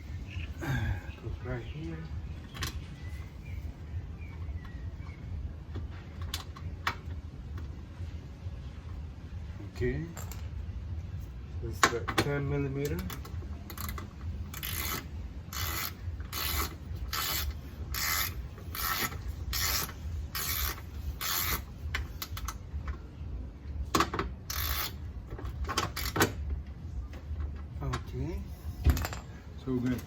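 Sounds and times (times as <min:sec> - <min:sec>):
ratchet wrench rasping: 0:12.8 - 0:22.6, 0:24.4 - 0:26.4
sharp ratchet clicks: 0:13.0 - 0:22.6, 0:24.5 - 0:25.1.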